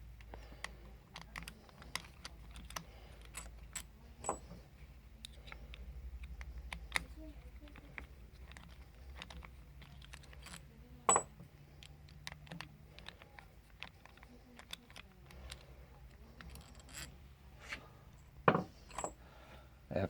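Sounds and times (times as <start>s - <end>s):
metallic clicks of tool and bolts: 0.2s - 4.6s, 18.5s - 19.2s.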